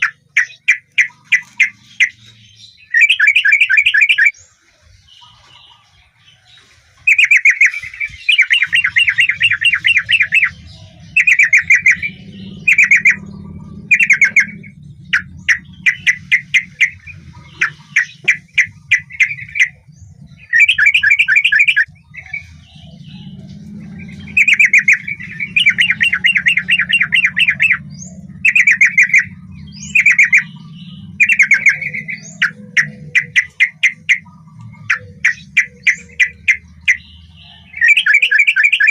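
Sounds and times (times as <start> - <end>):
bird singing chattering notes: 0.0 - 6.2, 7.0 - 38.9
faint low hum: 7.8 - 38.3.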